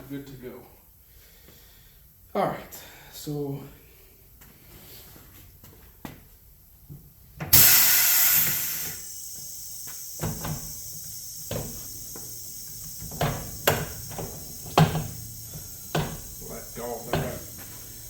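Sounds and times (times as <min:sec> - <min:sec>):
air compressor running: 0:07.5 - 0:18.0
compressed air hiss: 0:07.5 - 0:18.0.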